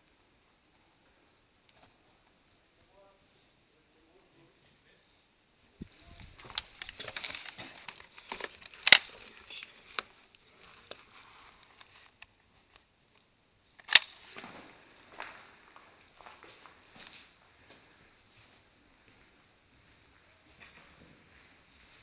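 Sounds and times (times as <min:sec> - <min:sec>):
rustling: 0:05.1 - 0:12.9
footsteps crunching on dry debris: 0:05.8 - 0:11.6, 0:14.2 - 0:22.0
small clicks: 0:13.1 - 0:14.1
sharp loud cracks: 0:13.8 - 0:14.2.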